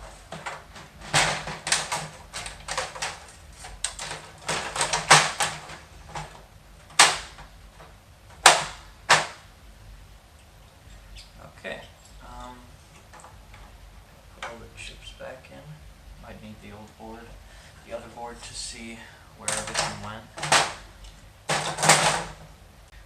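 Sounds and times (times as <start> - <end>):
computer parts clicking and knocking: 0.0 - 9.4, 19.4 - 22.5.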